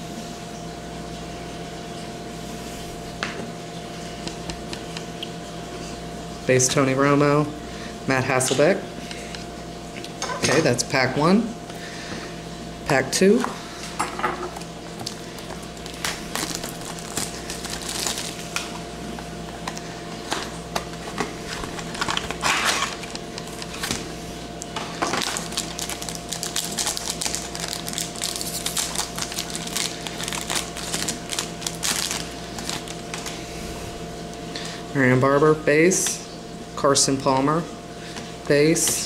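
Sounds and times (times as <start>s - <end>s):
faint steady hum: 0.0s - 39.0s
wrapper tearing and crinkling: 15.0s - 18.7s, 20.2s - 24.1s, 24.9s - 33.4s.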